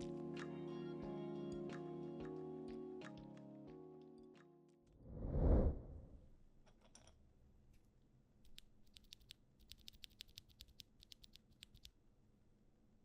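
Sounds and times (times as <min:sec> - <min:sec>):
low boom: 0:05.1 - 0:06.2
mechanical keyboard typing: 0:08.9 - 0:11.9.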